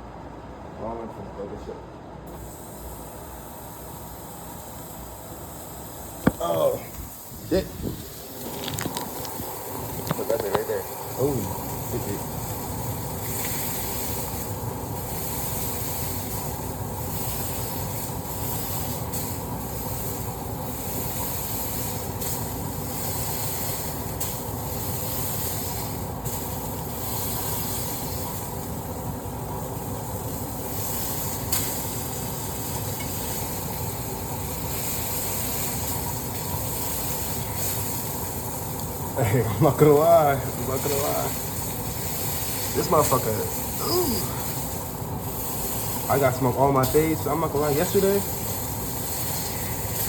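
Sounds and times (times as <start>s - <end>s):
patties sizzling in a frying pan: 2.6s - 50.0s
grease popping: 6.1s - 39.3s.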